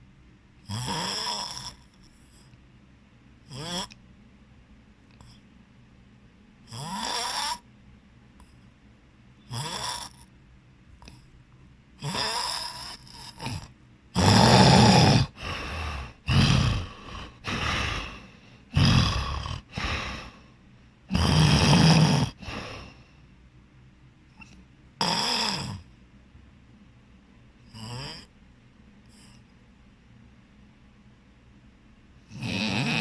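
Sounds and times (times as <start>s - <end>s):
person snoring loudly: 0.7s - 1.9s, 3.5s - 4.0s, 6.7s - 7.6s, 9.5s - 10.2s, 12.0s - 20.4s, 21.1s - 22.9s, 25.0s - 25.9s, 27.7s - 28.3s, 32.3s - 33.0s.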